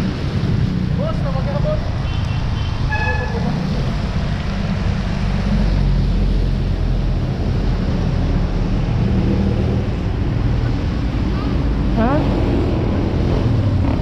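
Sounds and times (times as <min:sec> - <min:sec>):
road and wind noise: 0:00.0 - 0:14.0.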